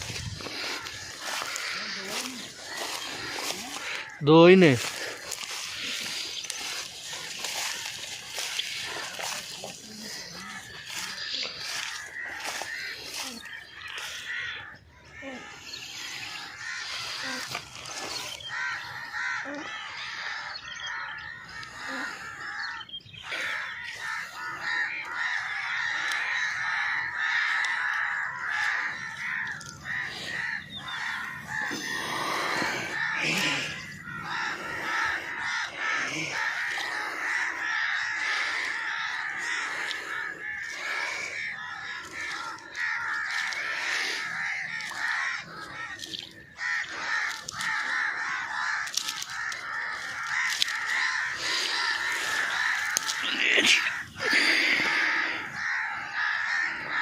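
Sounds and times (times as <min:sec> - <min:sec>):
flock of birds chattering: 0:00.0 - 0:57.0.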